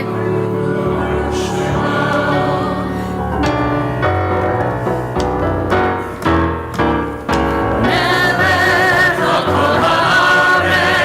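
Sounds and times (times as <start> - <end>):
voices singing a blessing: 0.0 - 4.1, 7.8 - 11.0
piano accompaniment: 0.0 - 11.0.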